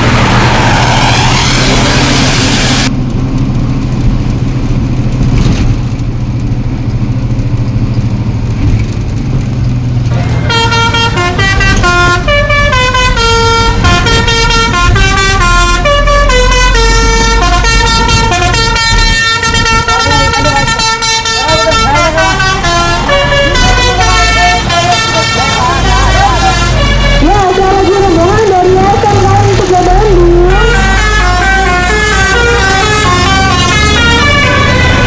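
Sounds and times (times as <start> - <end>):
bus engine running: 0.0 - 35.0
musical bus horn playing tune: 10.1 - 35.0.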